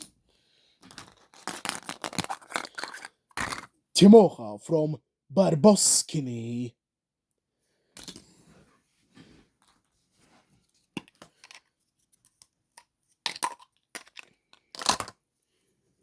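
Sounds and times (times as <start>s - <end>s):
wrapper tearing and rustling: 1.0s - 3.1s
plastic capsule clicking: 1.4s - 3.7s.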